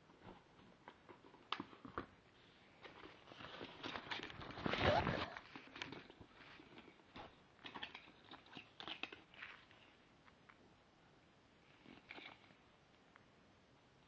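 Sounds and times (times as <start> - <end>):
packaging rustling and crinkling: 2.8 - 10.0.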